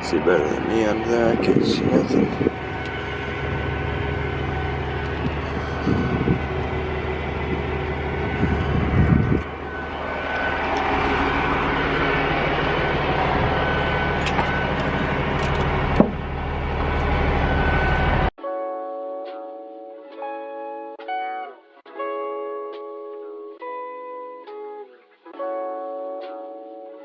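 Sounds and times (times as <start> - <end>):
engine idling: 0.0 - 18.3.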